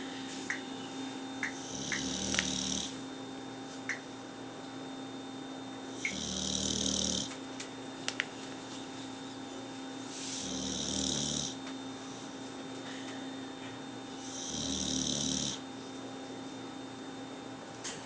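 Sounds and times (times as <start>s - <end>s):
dog snoring: 1.4s - 3.0s, 5.9s - 7.4s, 10.1s - 11.6s, 14.1s - 15.7s.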